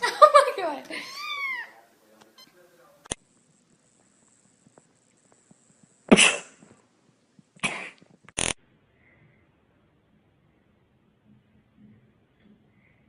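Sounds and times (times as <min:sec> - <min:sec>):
faint high whine: 0:00.9 - 0:07.4.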